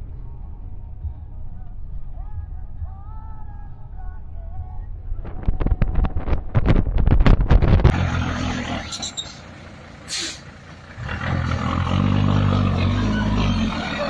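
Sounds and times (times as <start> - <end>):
diesel truck engine rumbling: 7.6 - 14.0.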